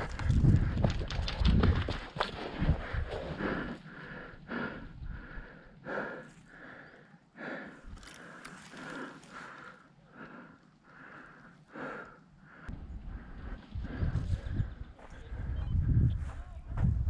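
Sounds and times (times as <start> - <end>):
person breathing hard: 0.1 - 14.9.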